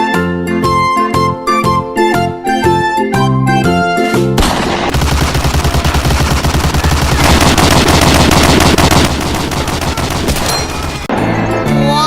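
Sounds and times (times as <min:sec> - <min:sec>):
music: 0:00.0 - 0:04.4, 0:09.7 - 0:12.0
machine-gun fire: 0:04.4 - 0:11.1.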